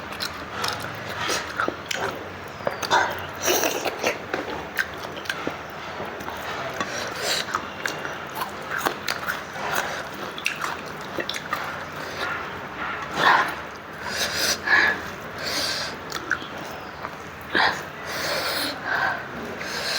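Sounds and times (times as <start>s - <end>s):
person chewing and smacking: 0.0s - 19.9s.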